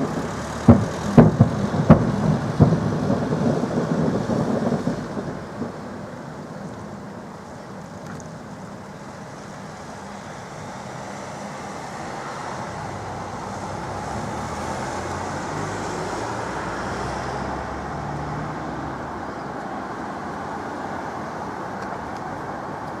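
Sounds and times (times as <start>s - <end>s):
vehicle passing close: 0.0s - 5.9s, 10.6s - 20.9s
road traffic hum: 0.0s - 23.0s.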